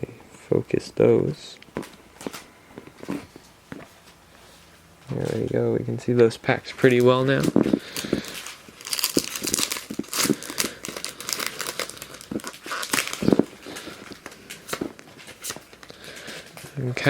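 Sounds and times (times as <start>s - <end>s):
foil wrapper crinkling and tearing: 6.8s - 17.0s.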